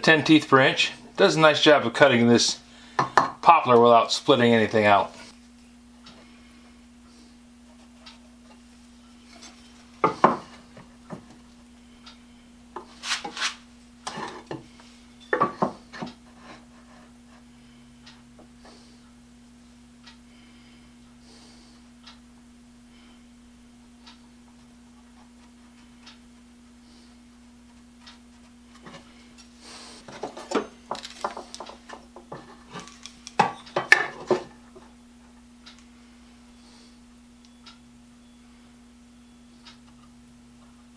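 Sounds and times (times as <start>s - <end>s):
steady low hum: 0.0s - 40.9s
brief scrapes: 13.0s - 13.6s.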